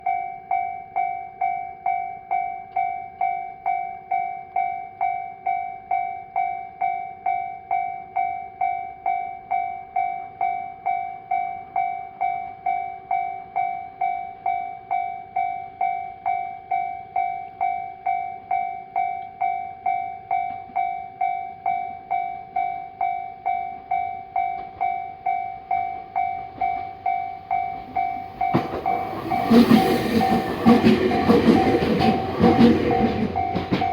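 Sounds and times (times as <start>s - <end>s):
level-crossing warning bell ringing: 0.0s - 33.9s
approaching train: 20.6s - 33.9s.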